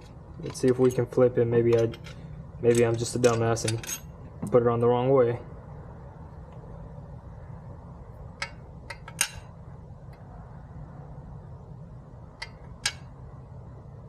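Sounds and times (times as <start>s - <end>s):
small metal parts clinking: 0.0s - 4.2s, 8.4s - 9.6s
steady low hum: 0.0s - 14.0s.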